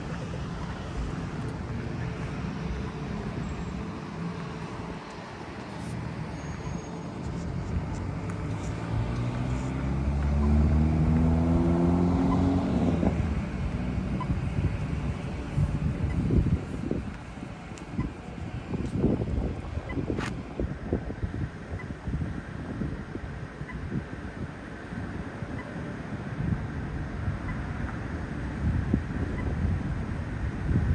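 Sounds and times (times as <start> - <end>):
road traffic rumble: 0.0 - 30.9
vehicle engine speeding up: 7.9 - 16.6.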